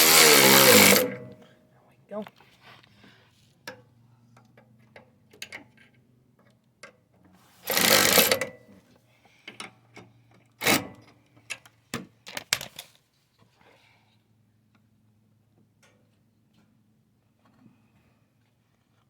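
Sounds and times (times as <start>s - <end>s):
hand tools clicking on metal parts: 0.0s - 1.3s, 7.7s - 8.5s.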